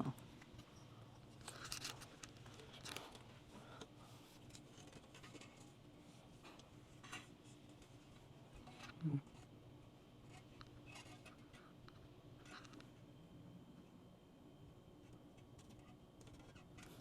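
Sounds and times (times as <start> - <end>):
low steady hum: 0.0 - 17.0
faint clicks and rustles: 0.1 - 9.6, 10.2 - 13.1.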